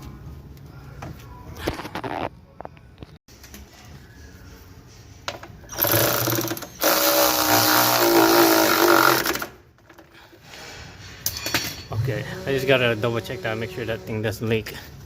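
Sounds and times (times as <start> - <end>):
cordless drill running: 5.7 - 9.5.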